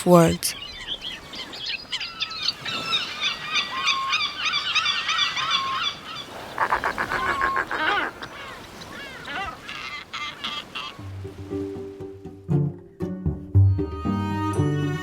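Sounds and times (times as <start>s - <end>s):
flock of birds calling: 0.0s - 11.1s.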